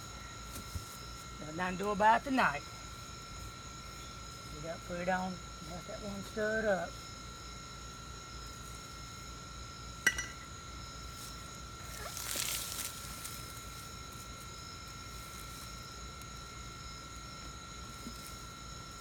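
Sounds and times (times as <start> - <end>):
faint high-pitched hum: 0.0 - 19.0
sharp metallic clink: 10.1 - 10.4
scraping rustle: 11.2 - 14.3.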